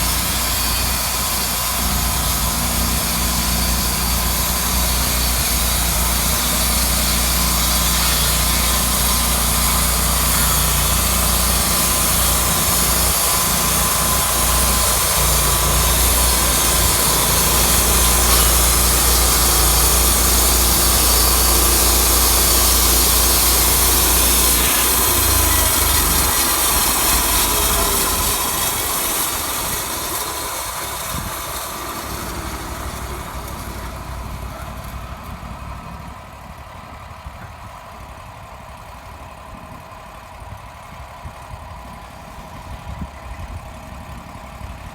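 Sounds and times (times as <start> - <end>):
saw blade cutting through log: 0.0 - 35.6
engine running steadily: 0.0 - 44.9.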